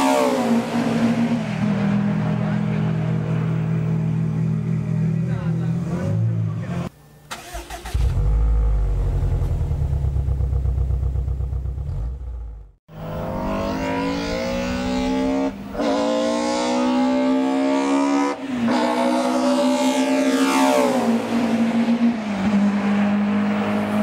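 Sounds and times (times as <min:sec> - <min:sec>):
car engine accelerating: 0:00.6 - 0:18.4
engine running at low revs: 0:08.0 - 0:15.8.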